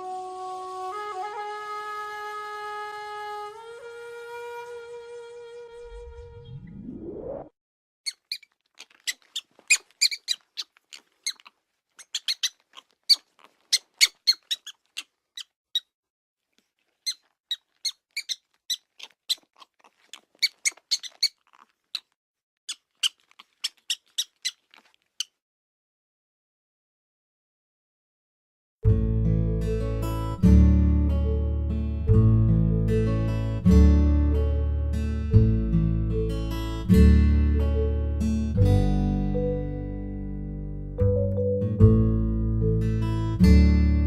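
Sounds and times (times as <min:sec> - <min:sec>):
rising tone sweep: 0:05.8 - 0:07.5
prairie dog squeaking: 0:08.1 - 0:15.9, 0:16.7 - 0:25.4.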